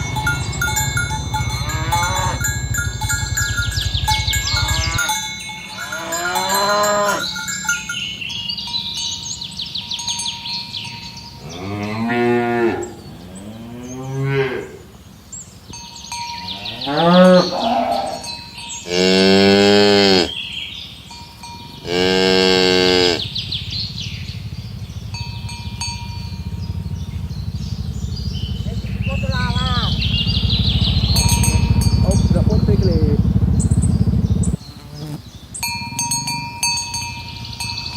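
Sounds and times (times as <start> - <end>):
cattle mooing: 0.0 - 7.3, 11.4 - 14.9, 16.5 - 20.4, 21.8 - 23.6
bell-like tinkling: 0.0 - 11.4, 15.7 - 18.9, 20.8 - 21.9, 25.2 - 26.9, 30.8 - 33.3, 35.6 - 37.9.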